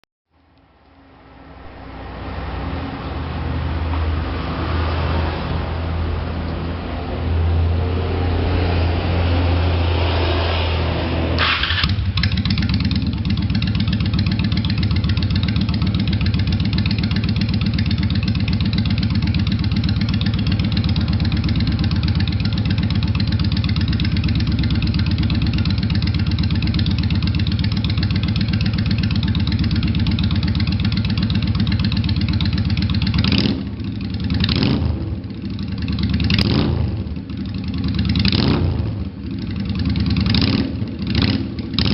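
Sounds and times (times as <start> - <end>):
engine revving blips: 7.8 - 41.9
car engine cranking and idling: 11.4 - 41.9.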